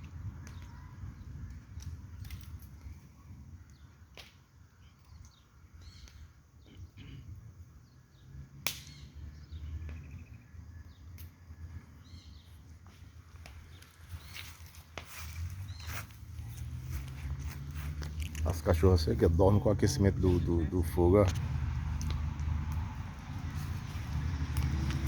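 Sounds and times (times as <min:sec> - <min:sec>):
wood fire burning: 0:00.0 - 0:06.4, 0:08.6 - 0:10.0, 0:10.6 - 0:25.0
sharp pops from wood: 0:08.6 - 0:09.0.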